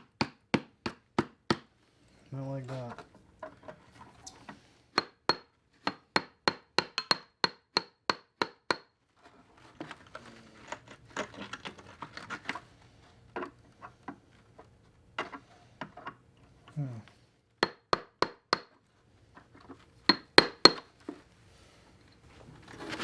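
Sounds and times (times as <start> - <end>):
scraping and crunching firebrick: 9.5 - 12.7, 22.6 - 23.0.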